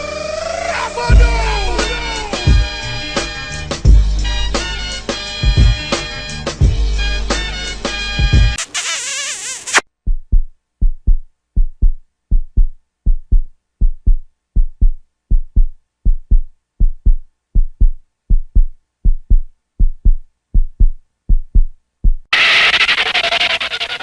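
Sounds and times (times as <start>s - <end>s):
heartbeat thumps: 1.1s - 1.5s, 2.5s - 2.9s, 3.8s - 4.3s, 5.4s - 5.9s, 8.2s - 8.6s, 10.0s - 22.3s.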